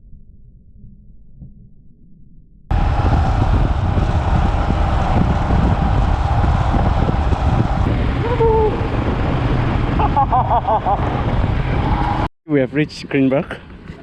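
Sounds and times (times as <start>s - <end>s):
wind on microphone: 2.7s - 12.3s
vehicle road and engine noise: 2.7s - 14.0s.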